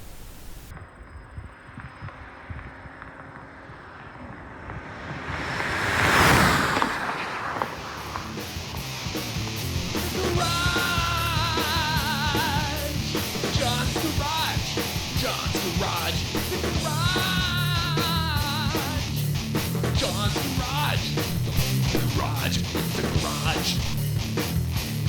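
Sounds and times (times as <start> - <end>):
rock music with driving beat: 7.8 - 25.0.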